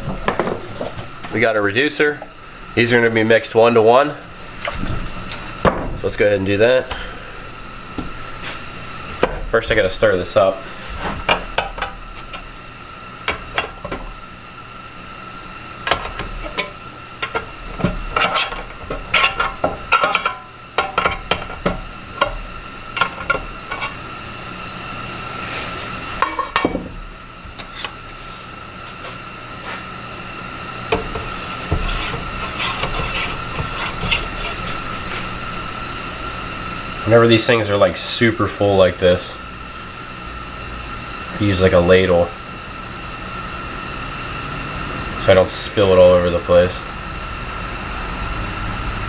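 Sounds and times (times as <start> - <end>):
steady high hum: 0.0 - 49.0
stick scraping inside paint can: 31.0 - 35.4.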